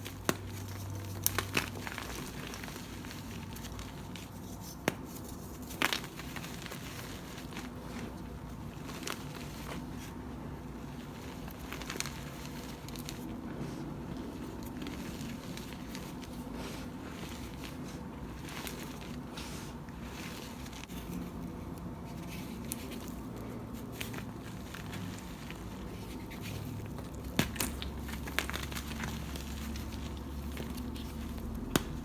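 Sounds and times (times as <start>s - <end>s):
powdery blocks crunching: 0.0s - 10.1s, 22.1s - 32.0s.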